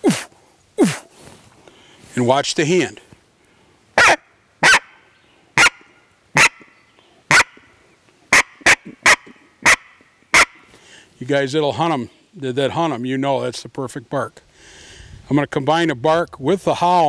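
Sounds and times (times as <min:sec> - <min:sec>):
coyote bark call: 0:04.0 - 0:05.0, 0:05.6 - 0:07.7, 0:08.3 - 0:10.7.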